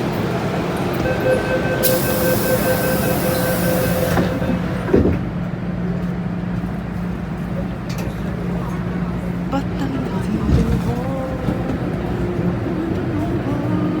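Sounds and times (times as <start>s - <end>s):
train humming: 0.0s - 14.0s
pulsing warning tone: 1.0s - 4.6s.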